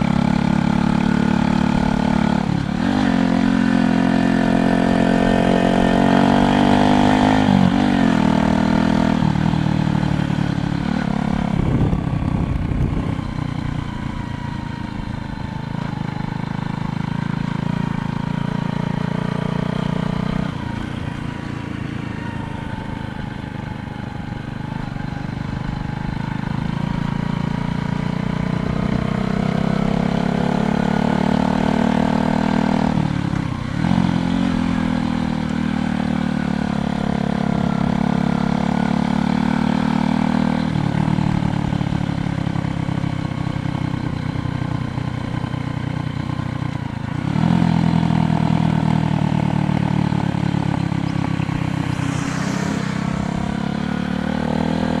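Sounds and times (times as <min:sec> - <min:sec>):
vehicle engine running: 0:47.8 - 0:55.0.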